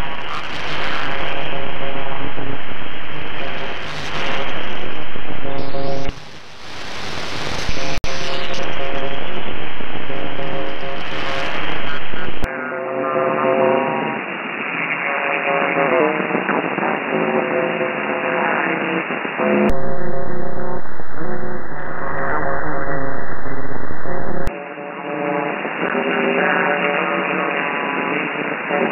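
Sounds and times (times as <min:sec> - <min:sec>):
radio noise: 0:00.0 - 0:12.7, 0:19.6 - 0:24.6
song over radio: 0:19.7 - 0:28.9.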